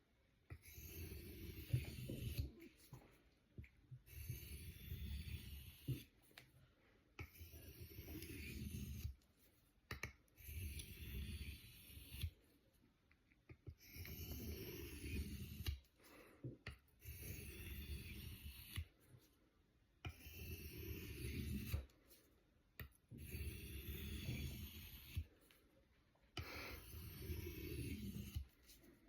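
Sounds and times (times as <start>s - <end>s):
knife scraping on sharpening stone: 7.2s - 9.2s, 20.1s - 21.9s, 23.2s - 25.2s, 26.4s - 28.5s.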